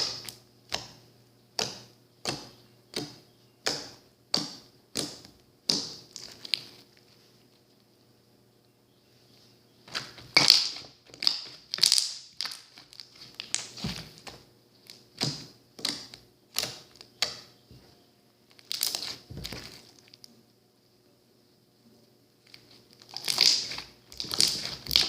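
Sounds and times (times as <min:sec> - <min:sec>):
slime squishing by hand: 0:00.0 - 0:07.0, 0:09.9 - 0:17.5, 0:18.5 - 0:20.3, 0:22.4 - 0:25.0.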